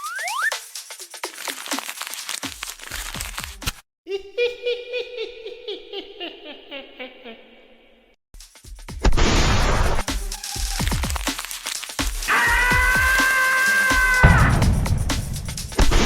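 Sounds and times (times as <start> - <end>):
cartoon wobbling sound effect: 0.0 - 0.6
paper crinkling: 0.6 - 3.8, 10.8 - 12.1.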